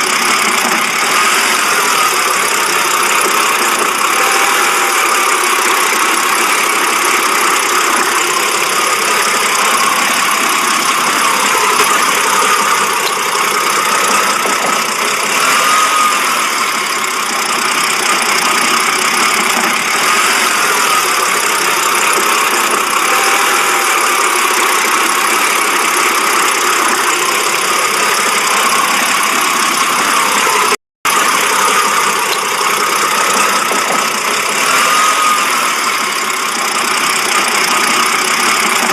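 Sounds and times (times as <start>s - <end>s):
car engine idling roughly: 0.0s - 38.9s.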